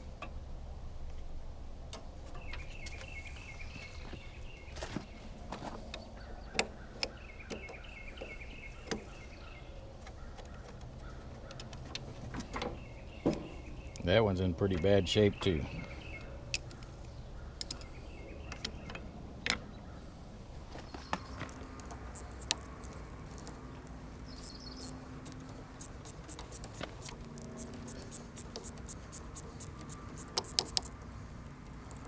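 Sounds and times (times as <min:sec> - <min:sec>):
metal tools clicking and scraping: 0:21.0 - 0:32.0.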